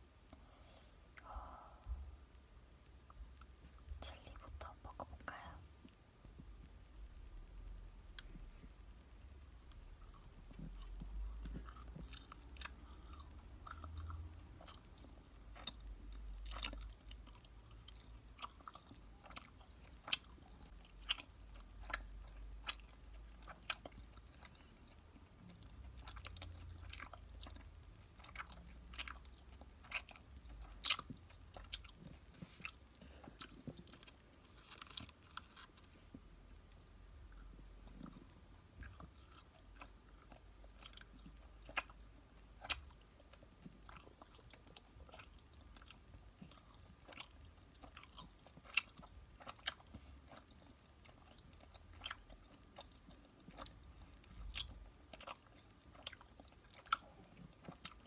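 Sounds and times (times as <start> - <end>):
person chewing crunchy snack: 9.6 - 58.0.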